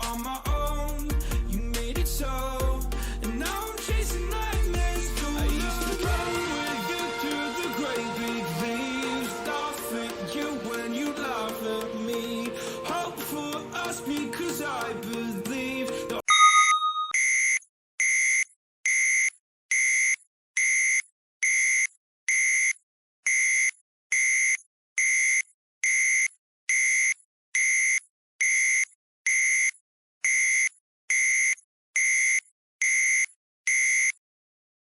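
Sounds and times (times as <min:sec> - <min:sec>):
background music: 0:00.0 - 0:16.6
timer alarm beeps: 0:16.2 - 0:34.2.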